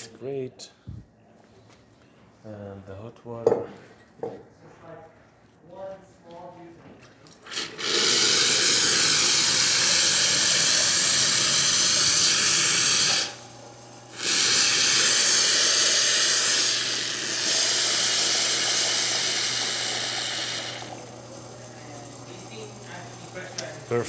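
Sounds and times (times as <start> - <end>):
steady low hum: 0.0 - 24.0
espresso machine water tap hissing: 7.3 - 24.0.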